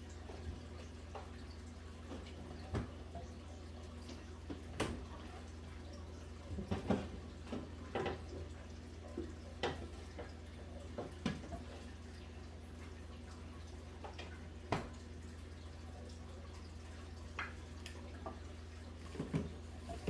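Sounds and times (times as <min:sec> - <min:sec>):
light clicks and taps: 0:17.2 - 0:18.5.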